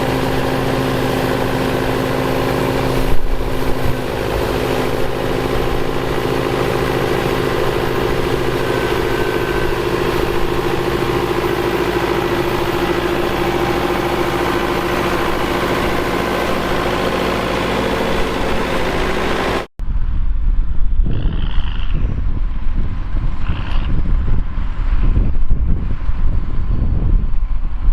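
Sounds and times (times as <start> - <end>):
tractor diesel engine running: 0.0 - 19.7
gusty wind on microphone: 2.7 - 27.9.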